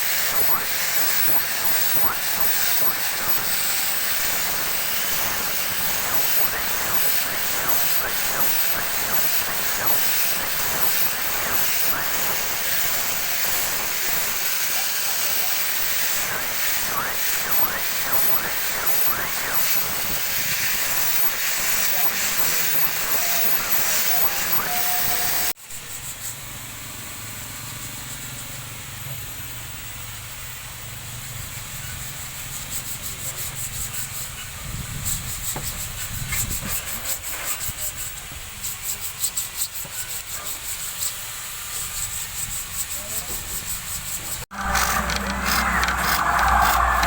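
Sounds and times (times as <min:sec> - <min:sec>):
sandpaper rubbing by hand: 0:32.4 - 0:47.0.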